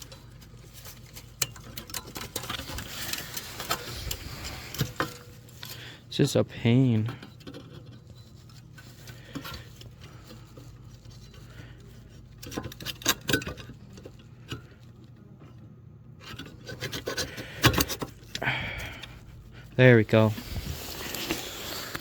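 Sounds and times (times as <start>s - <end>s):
plastic scraping against base: 20.1s - 22.0s.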